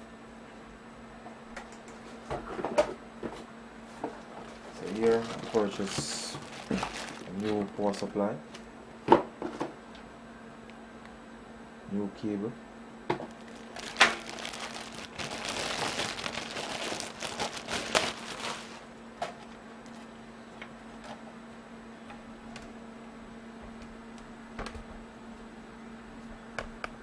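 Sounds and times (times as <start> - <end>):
plastic packaging crinkling: 4.4 - 8.2, 13.3 - 18.9.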